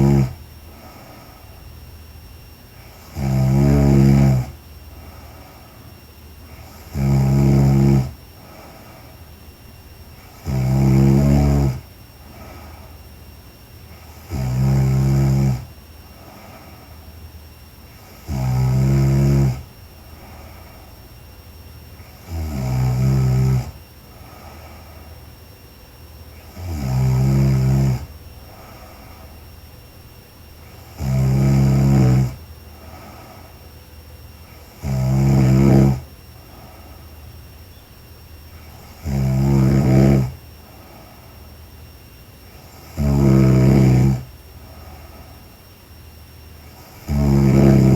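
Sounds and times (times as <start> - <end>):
woman snoring: 0.0 - 1.6, 2.8 - 9.1, 10.2 - 13.0, 14.0 - 16.9, 18.0 - 20.8, 22.0 - 25.0, 26.4 - 29.3, 30.6 - 33.5, 34.6 - 36.9, 38.6 - 41.2, 42.5 - 45.4, 46.7 - 47.9
quiet breathing: 0.0 - 47.9.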